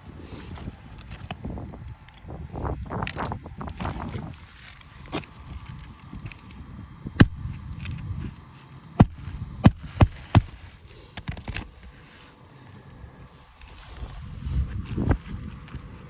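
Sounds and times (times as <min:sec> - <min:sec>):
wind rumbling on microphone: 0:00.0 - 0:08.5, 0:09.1 - 0:12.0, 0:12.9 - 0:16.0.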